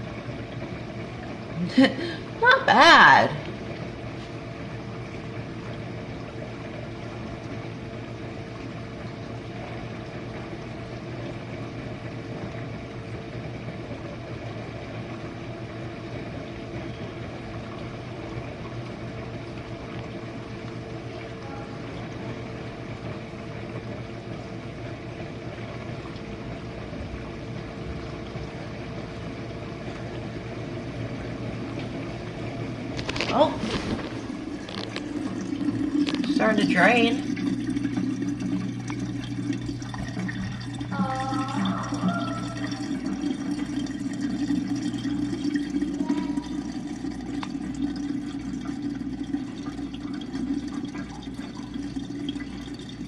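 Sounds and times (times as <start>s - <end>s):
dishwasher motor hum: 0.0s - 53.0s
water spraying and sloshing: 31.4s - 53.0s.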